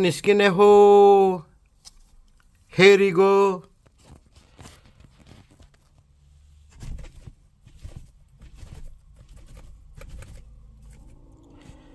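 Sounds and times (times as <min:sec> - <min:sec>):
kittens pattering and scratching: 0:03.7 - 0:11.9.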